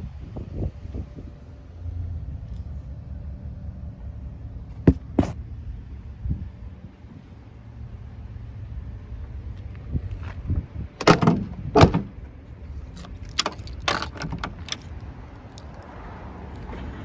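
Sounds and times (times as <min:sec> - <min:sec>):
low steady rumble: 0:00.0 - 0:17.0
sharp knocks and rattling: 0:04.8 - 0:05.4, 0:11.0 - 0:15.1.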